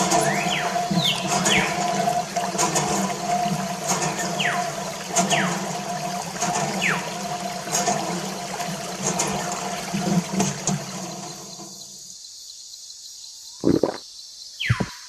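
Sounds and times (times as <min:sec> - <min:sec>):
water running and trickling: 0:00.0 - 0:12.0.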